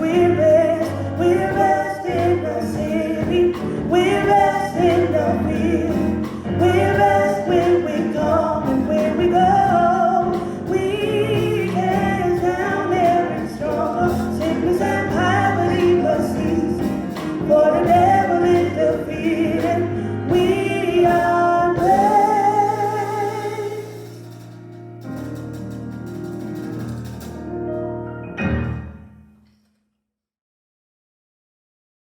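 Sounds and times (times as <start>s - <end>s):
gospel singing with instruments: 0.0s - 25.5s.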